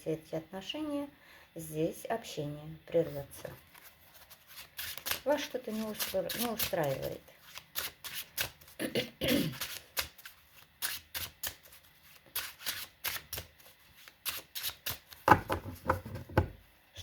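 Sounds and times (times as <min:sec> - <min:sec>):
cards being shuffled: 0:03.4 - 0:08.8, 0:09.5 - 0:15.7.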